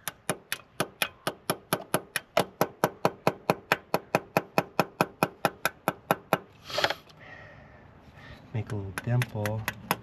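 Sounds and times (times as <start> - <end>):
hammer tapping on metal punch: 8.9 - 10.0.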